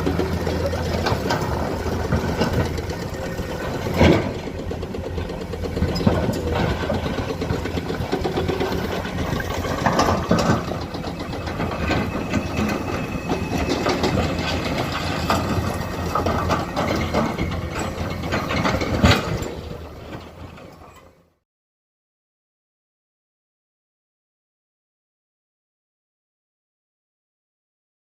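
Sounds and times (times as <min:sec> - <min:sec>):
excavator diesel engine running: 0:00.0 - 0:21.4.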